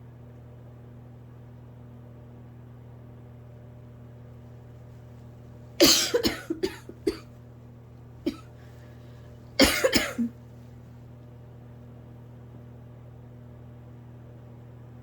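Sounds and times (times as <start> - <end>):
person coughing: 5.8 - 7.2, 8.3 - 8.5, 9.6 - 10.3.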